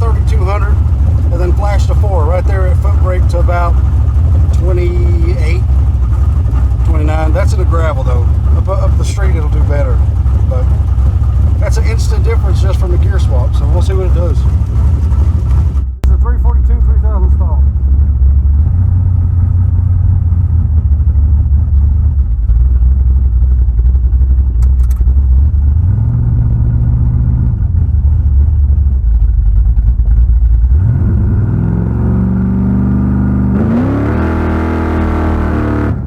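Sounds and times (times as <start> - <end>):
car engine revving: 0.0 - 16.0, 30.6 - 36.0.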